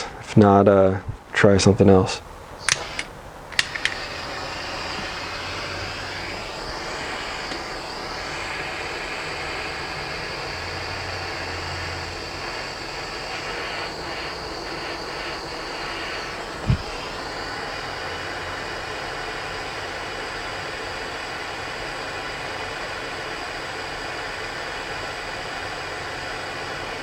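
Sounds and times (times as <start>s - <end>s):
gas torch flame hissing: 0.0s - 27.0s
sharp clicks: 2.6s - 7.8s.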